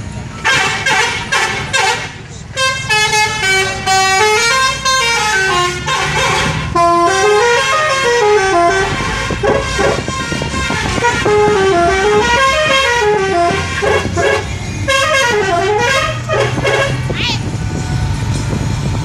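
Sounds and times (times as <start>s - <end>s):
engine rumble: 0.0s - 19.0s
multi-tone bus horn: 0.2s - 17.6s.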